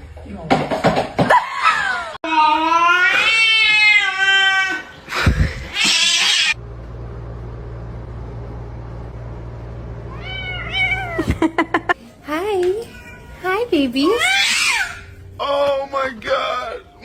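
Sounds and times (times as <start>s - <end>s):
cat meowing: 2.3s - 4.8s, 5.7s - 6.6s, 10.1s - 11.2s, 12.8s - 13.4s
low steady hum: 6.5s - 17.0s.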